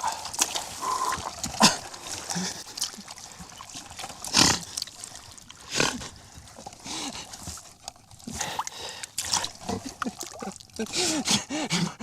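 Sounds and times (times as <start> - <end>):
mud squelching and splashing: 0.0 - 11.4.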